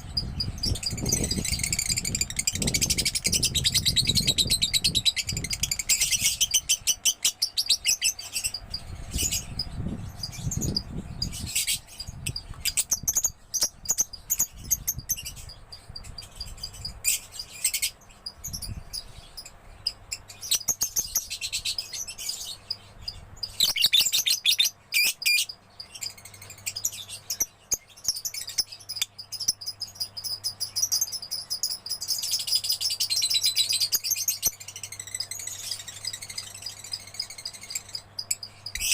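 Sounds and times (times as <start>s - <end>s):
lovebird chirping: 0.0s - 38.9s.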